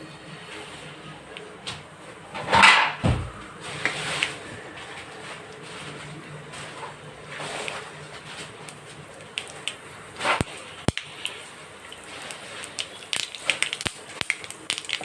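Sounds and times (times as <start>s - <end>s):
low sizzle: 0.0s - 15.0s
mustard seeds popping in oil: 8.5s - 15.0s.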